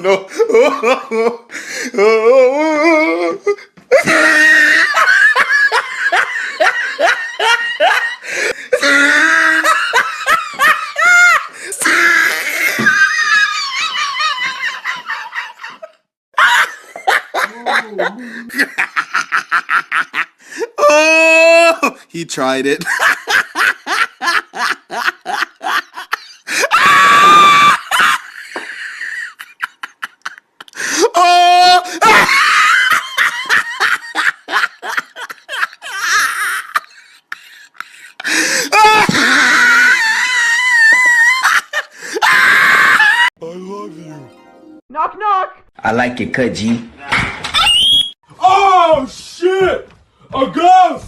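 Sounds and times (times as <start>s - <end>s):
person laughing hard: 0.0s - 21.9s, 22.8s - 43.3s
high-pitched scream: 47.5s - 48.2s.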